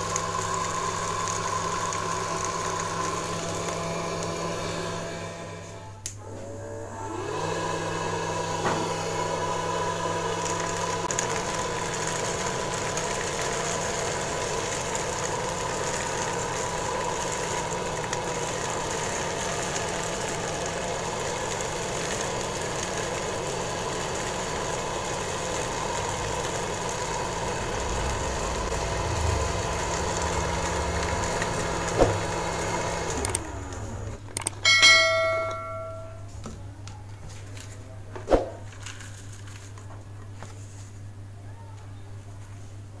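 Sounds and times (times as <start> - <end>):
bell-like ring: 34.6 - 36.3.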